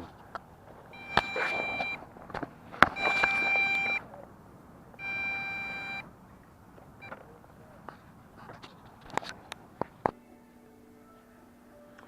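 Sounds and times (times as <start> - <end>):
electronic beeper long beeps: 0.9 - 2.0, 3.0 - 4.0, 5.0 - 6.1.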